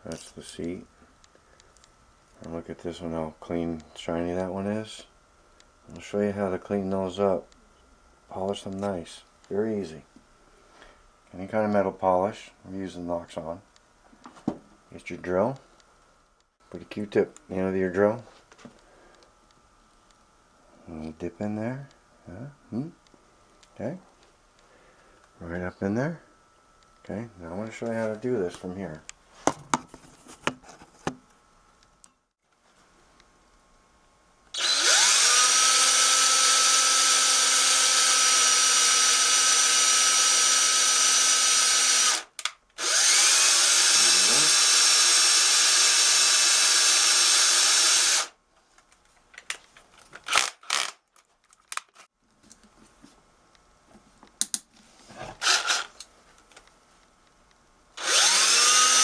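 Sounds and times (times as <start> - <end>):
electric drill whining: 34.6 - 48.3, 55.4 - 56.0, 58.0 - 59.0.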